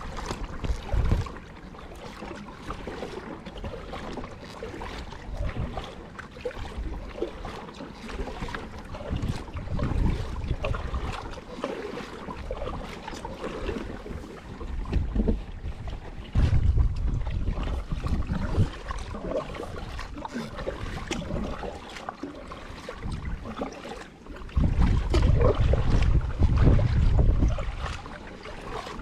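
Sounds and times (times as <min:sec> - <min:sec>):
wind buffeting microphone: 0:00.0 - 0:01.4, 0:08.2 - 0:11.3, 0:14.5 - 0:21.6, 0:24.4 - 0:29.0
water splashes: 0:00.0 - 0:29.0.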